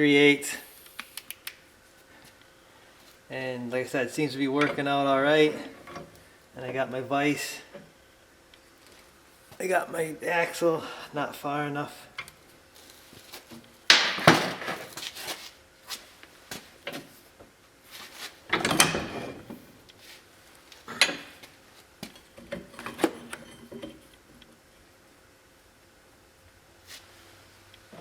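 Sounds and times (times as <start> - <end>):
metal parts clanking and scraping: 18.5 - 19.6, 22.0 - 24.0.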